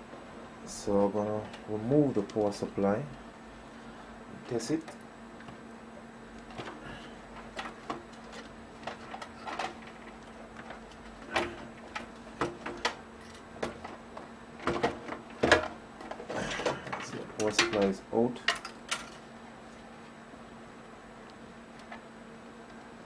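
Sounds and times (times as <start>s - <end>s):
computer parts clicking and scraping: 7.4s - 13.5s.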